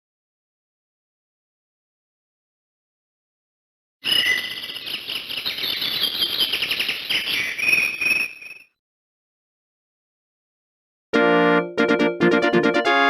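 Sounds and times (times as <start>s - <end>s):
ringtone of animal chirping: 4.0s - 8.8s.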